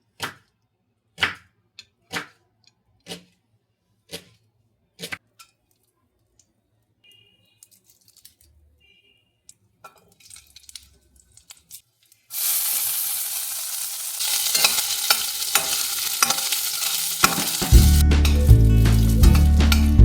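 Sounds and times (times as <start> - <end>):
food sizzling in hot oil: 12.3 - 20.0.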